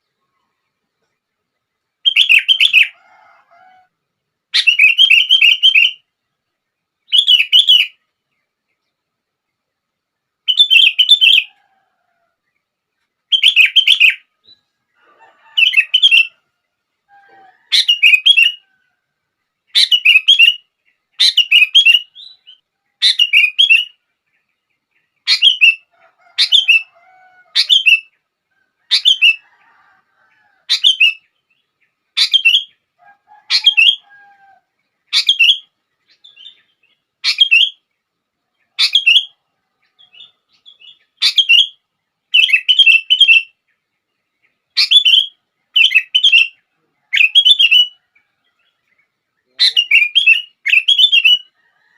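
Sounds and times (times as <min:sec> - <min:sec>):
bird singing whistled phrases: 0:37.3 - 0:37.8, 0:40.2 - 0:41.8, 0:44.8 - 0:48.0, 0:49.6 - 0:51.5.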